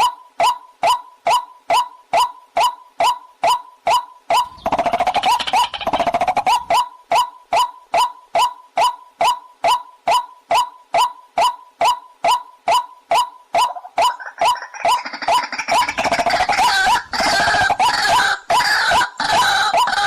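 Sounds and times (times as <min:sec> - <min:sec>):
waterhen calling: 0:12.7 - 0:20.0.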